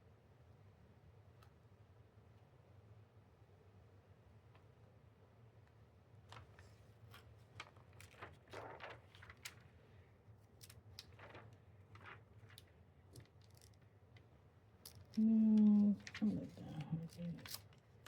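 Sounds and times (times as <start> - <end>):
faint clicks and rustles: 5.6 - 18.0.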